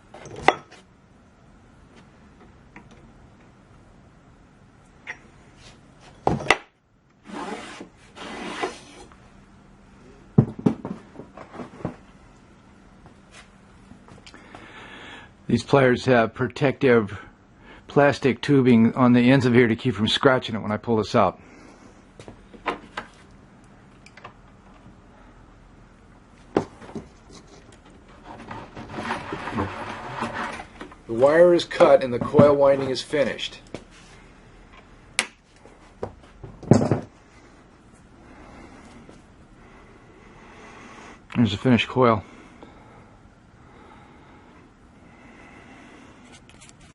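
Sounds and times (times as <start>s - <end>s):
scraping rubs: 7.2s - 9.1s, 27.1s - 33.3s.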